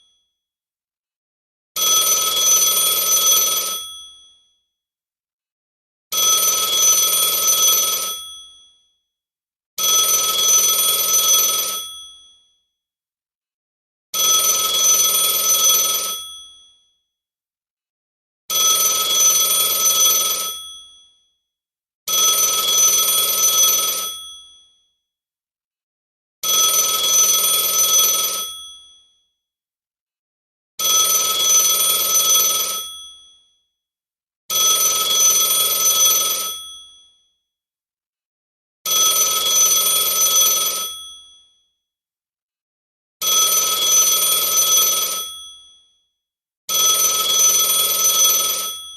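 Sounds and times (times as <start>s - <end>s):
telephone ringing: 14.4s - 16.3s, 18.6s - 20.6s, 22.1s - 24.3s, 31.0s - 33.0s, 43.4s - 45.5s, 47.0s - 48.9s.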